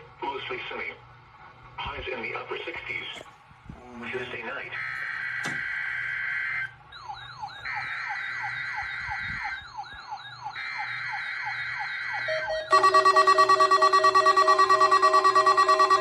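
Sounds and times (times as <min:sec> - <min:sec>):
falling siren-like chirp: 0:04.7 - 0:16.0
loud pulsing multi-tone alarm: 0:04.7 - 0:16.0.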